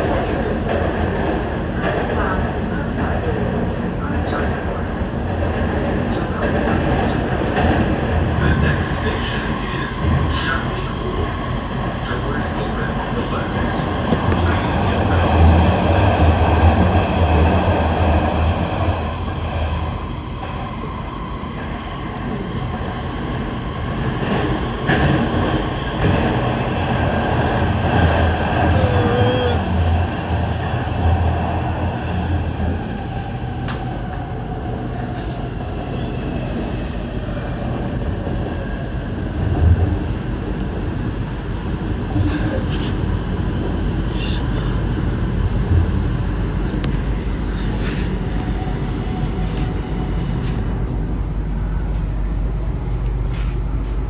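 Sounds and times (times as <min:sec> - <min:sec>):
train rumbling: 0:00.0 - 0:54.0.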